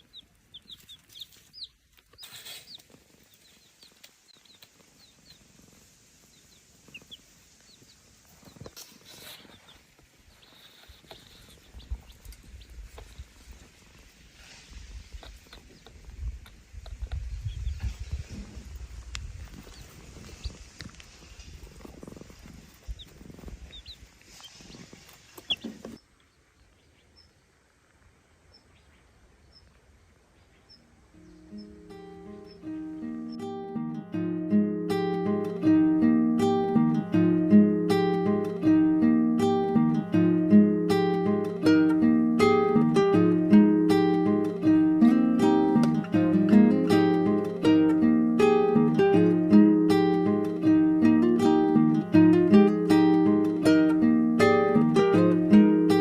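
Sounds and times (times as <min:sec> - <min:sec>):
chicks peeping: 0:00.0 - 0:27.4.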